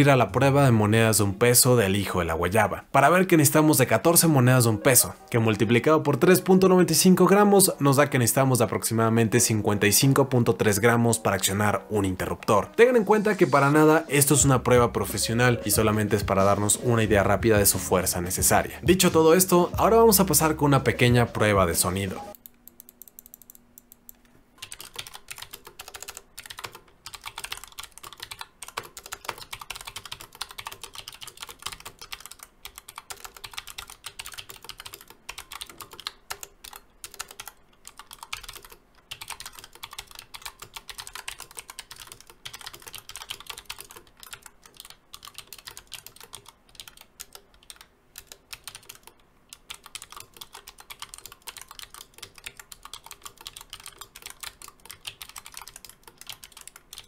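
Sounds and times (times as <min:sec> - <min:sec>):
clicky keyboard typing: 0:19.0 - 0:57.0.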